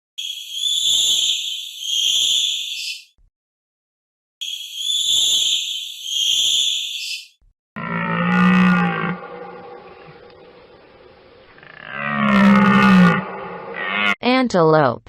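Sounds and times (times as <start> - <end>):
bonobo calls: 11.6 - 14.2.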